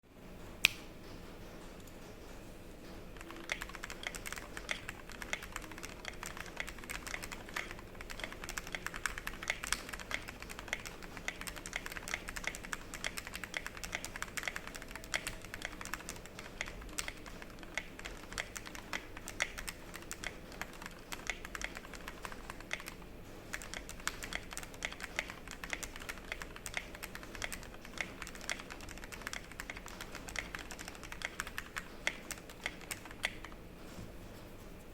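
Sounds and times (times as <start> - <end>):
mechanical keyboard typing: 1.9 - 33.6.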